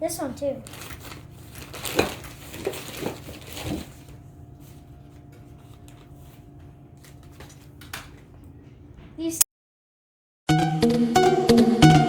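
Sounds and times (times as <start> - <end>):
faint steady hum: 0.0 - 9.4.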